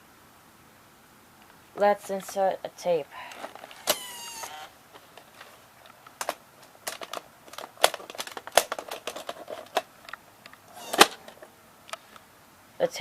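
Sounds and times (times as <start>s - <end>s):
plastic cassette clicks and knocks: 5.0s - 11.4s.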